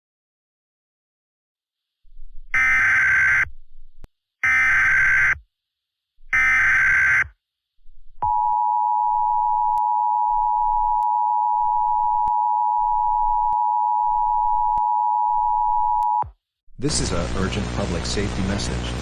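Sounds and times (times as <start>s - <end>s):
digital data burst screech: 6.4s - 7.2s.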